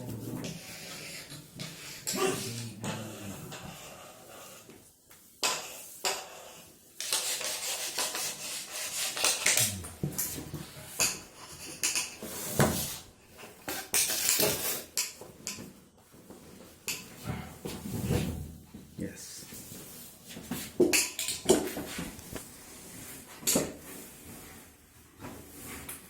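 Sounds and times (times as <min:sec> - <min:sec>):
metal pots clattering and scraping: 0:10.0 - 0:15.7.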